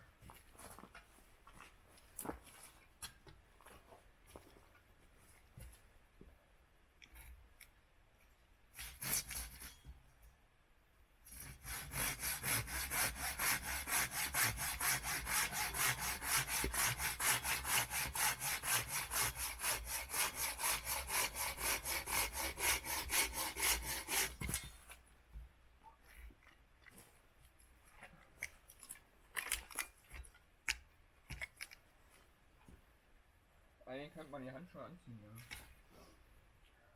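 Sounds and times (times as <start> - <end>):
hand saw cutting wood: 8.8 - 9.9, 11.3 - 24.9.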